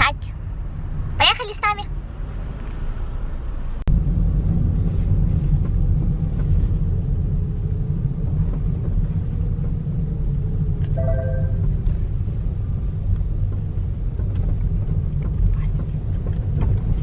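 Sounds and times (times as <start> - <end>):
car engine and road noise: 0.0 - 17.0
short high tone: 11.0 - 11.7.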